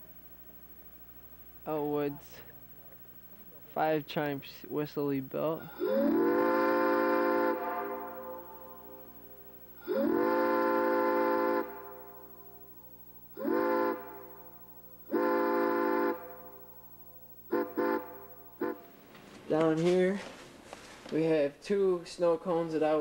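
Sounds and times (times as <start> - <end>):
chime whistle blasts: 5.8 - 12.7.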